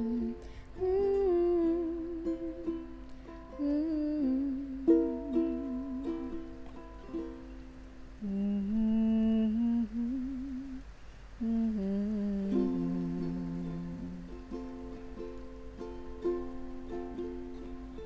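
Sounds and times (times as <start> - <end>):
person humming with vibrato: 0.0 - 7.2, 8.2 - 14.9
plucked ukulele chords: 0.0 - 8.2, 12.4 - 18.0.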